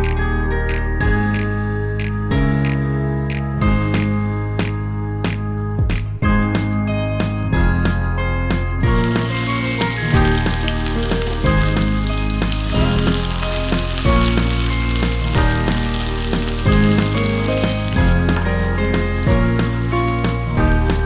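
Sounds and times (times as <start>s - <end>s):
background music with bass line: 0.0s - 21.0s
food sizzling in hot oil: 8.9s - 21.0s.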